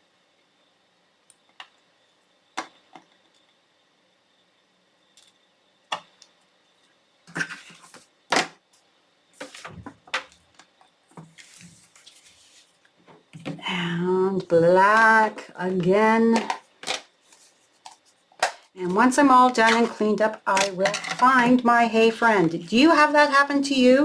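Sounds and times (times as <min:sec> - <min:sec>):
paper rustling: 0:11.2 - 0:12.8.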